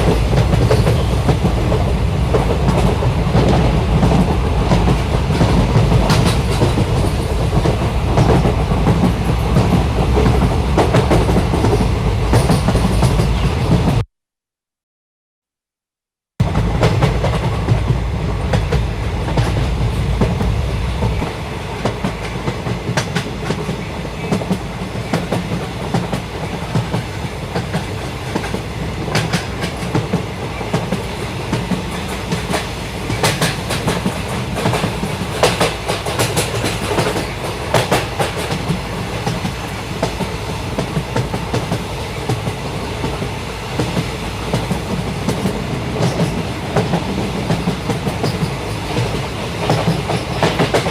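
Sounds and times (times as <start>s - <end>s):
train rumbling: 0.0s - 14.1s, 16.4s - 50.9s
wheels clacking over rail joints: 16.5s - 50.9s.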